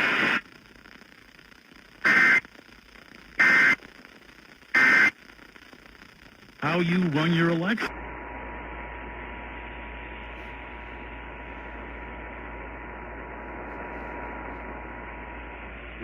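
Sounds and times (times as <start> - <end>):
radio static hiss: 0.0 - 16.0
low hum: 5.4 - 16.0.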